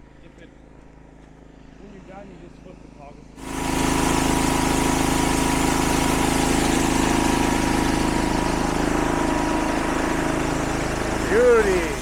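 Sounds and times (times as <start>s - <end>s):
farm engine running: 3.4s - 12.0s.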